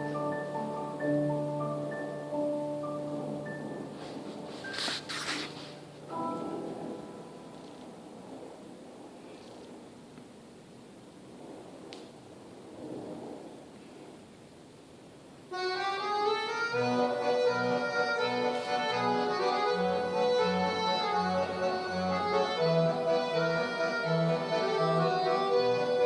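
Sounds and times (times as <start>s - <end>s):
instrumental music with bass pattern: 15.6s - 26.0s.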